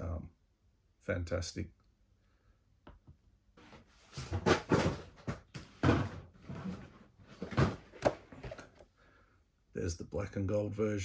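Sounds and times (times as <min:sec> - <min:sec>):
objects being moved by hand: 0:03.6 - 0:08.9.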